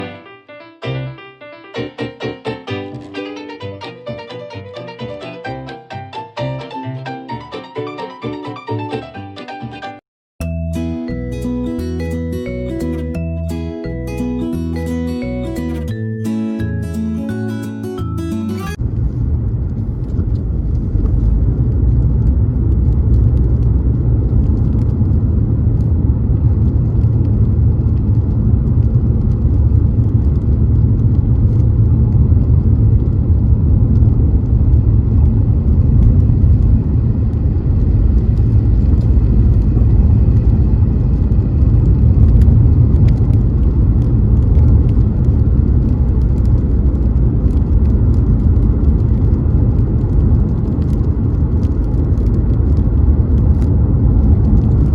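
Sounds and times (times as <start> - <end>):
tyre and road rumble: 18.8 - 54.9.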